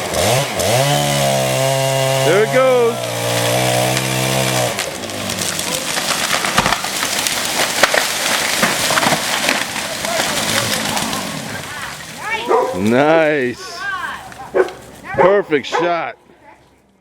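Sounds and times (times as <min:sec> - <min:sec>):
chainsaw running: 0:00.0 - 0:11.6
wood cracking and splintering: 0:00.0 - 0:15.2.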